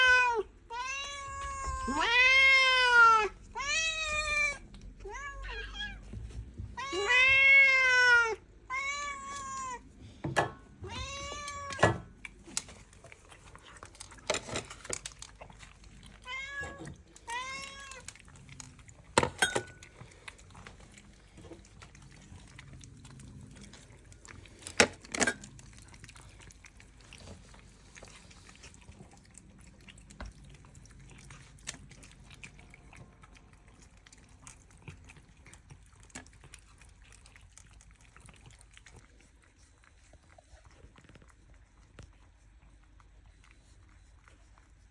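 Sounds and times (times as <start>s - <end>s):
cat meowing: 0.0s - 6.0s, 6.8s - 9.8s, 10.8s - 12.0s, 16.2s - 18.1s.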